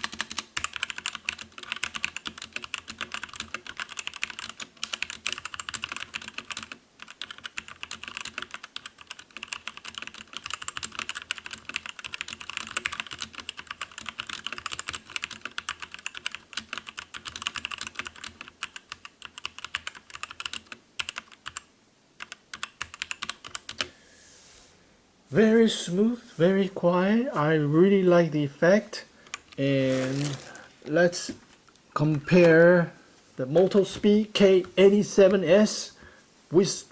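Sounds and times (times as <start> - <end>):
mechanical keyboard typing: 0.0 - 23.9.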